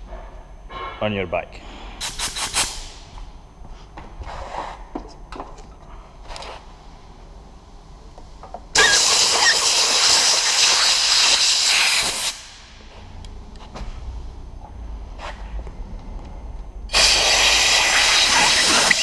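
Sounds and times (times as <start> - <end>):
air gun hissing: 2.0 - 3.1, 8.8 - 12.8, 16.9 - 19.0.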